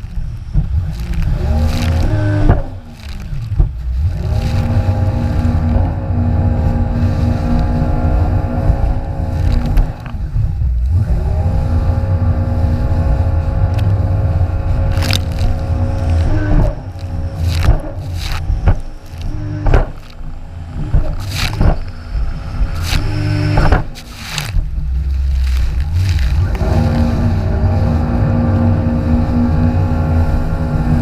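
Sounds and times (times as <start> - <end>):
rumble of wind and water: 0.0 - 31.0
jet ski engine running hard: 3.9 - 18.6, 26.0 - 31.0.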